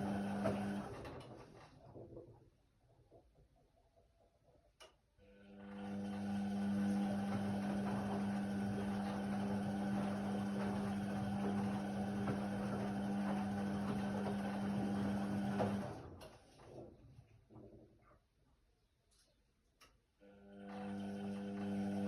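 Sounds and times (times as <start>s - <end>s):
washer-dryer humming: 0.0s - 1.3s, 5.8s - 16.2s, 20.6s - 22.0s.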